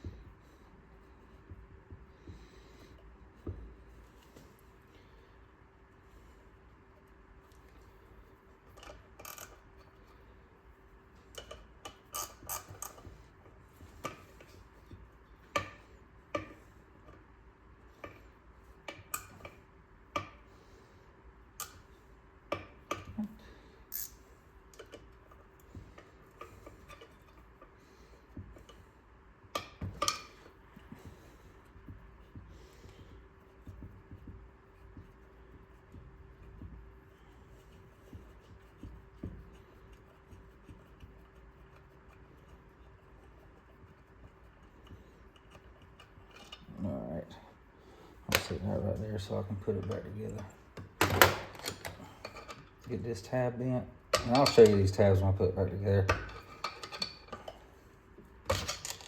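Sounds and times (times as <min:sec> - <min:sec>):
wrench and metal parts clinking: 0:23.9 - 0:24.2, 0:54.2 - 0:55.0, 0:58.5 - 0:59.0.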